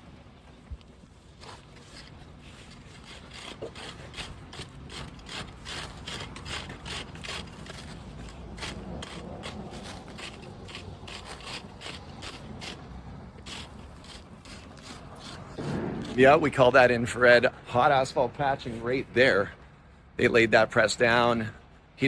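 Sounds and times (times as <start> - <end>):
rake scraping asphalt: 1.1 - 17.4.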